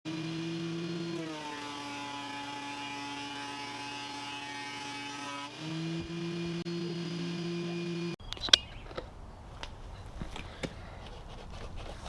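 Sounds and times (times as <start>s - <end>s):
small electric motor whining: 0.1s - 8.2s.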